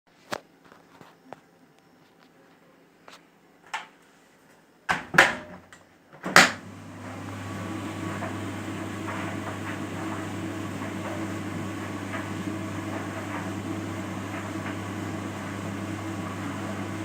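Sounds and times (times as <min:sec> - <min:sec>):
dryer controls and door clicking: 0:04.9 - 0:06.6
tumble dryer drum humming: 0:06.2 - 0:17.0.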